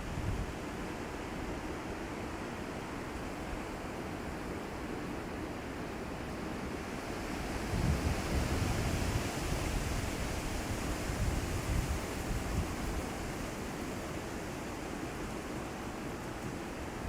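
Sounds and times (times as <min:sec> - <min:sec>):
wind gusting through trees: 0:00.0 - 0:17.0
leaves rustling: 0:05.8 - 0:17.0
wind buffeting microphone: 0:07.3 - 0:14.1.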